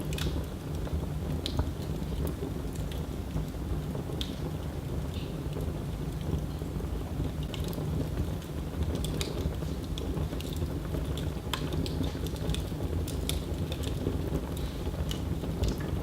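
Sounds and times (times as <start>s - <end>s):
wood fire crackling and popping: 0.0s - 16.0s.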